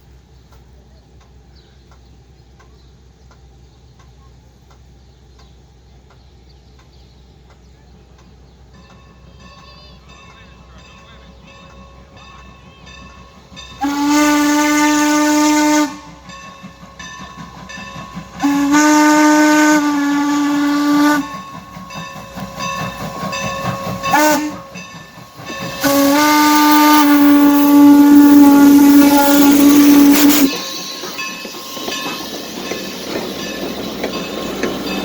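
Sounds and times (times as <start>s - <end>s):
steam hissing: 7.3s - 35.0s
steam locomotive whistle: 13.7s - 16.3s, 17.3s - 35.0s.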